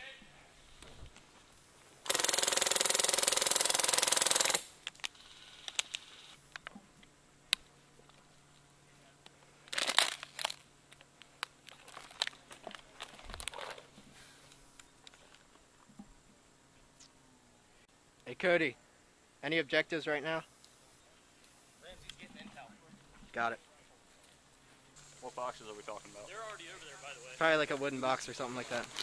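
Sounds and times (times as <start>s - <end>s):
airsoft rifle full-auto burst: 2.0s - 6.3s
clicks and gear rustle: 9.7s - 14.0s.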